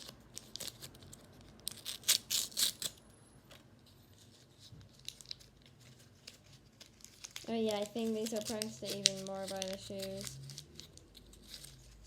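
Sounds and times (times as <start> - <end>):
plastic packaging crinkling: 4.2 - 12.0.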